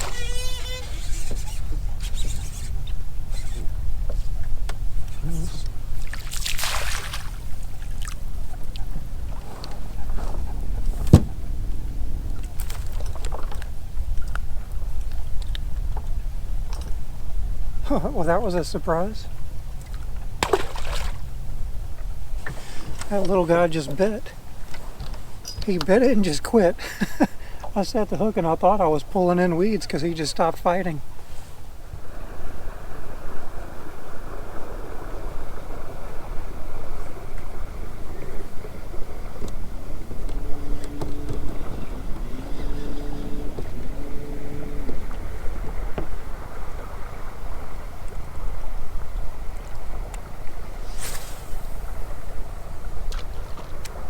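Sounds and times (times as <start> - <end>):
boat ambience rumble: 0.0 - 54.0
wind buffeting microphone: 0.0 - 54.0.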